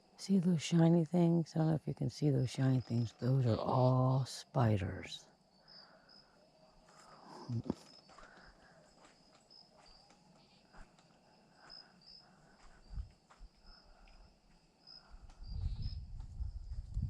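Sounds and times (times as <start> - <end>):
crickets chirping: 0.0 - 17.0
faint ticks and rustles: 5.3 - 17.0.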